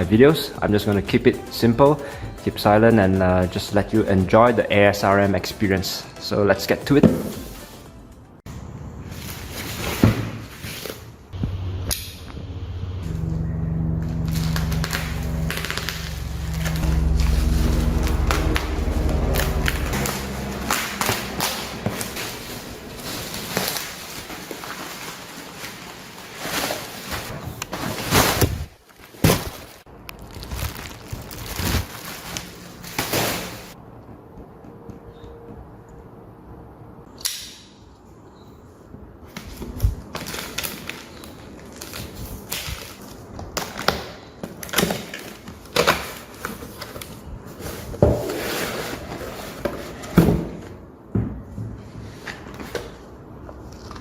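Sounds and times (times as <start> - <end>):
steady low hum: 11.4 - 24.6
cardboard packaging rustling: 14.2 - 33.8.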